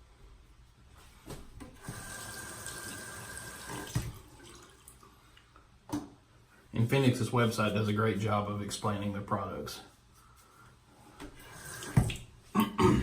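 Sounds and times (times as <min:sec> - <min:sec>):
sink tap running: 0:01.8 - 0:04.2.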